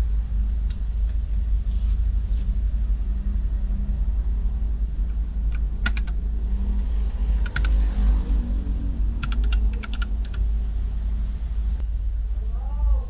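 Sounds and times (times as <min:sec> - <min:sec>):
low rumble: 0:00.0 - 0:12.6
mechanical keyboard key clicks: 0:07.4 - 0:07.8, 0:09.2 - 0:10.4.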